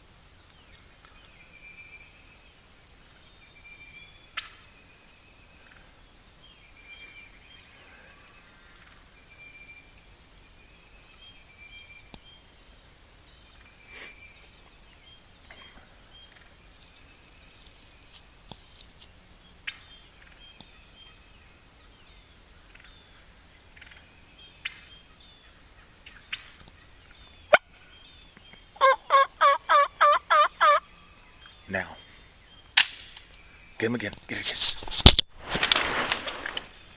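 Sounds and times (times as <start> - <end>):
small birds chirping: 0.0 - 34.8
turkey gobbling: 28.8 - 30.8.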